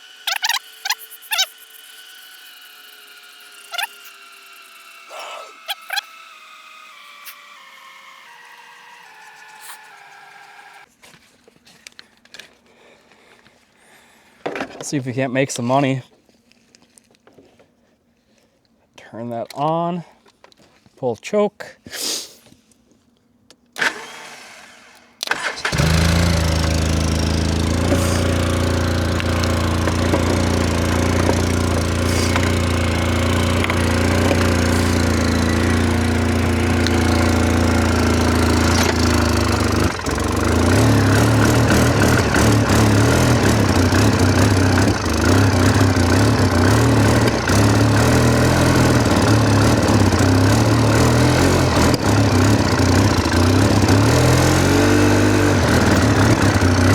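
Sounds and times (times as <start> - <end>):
gasoline engine starting and running: 0.0 - 10.9, 23.8 - 56.9.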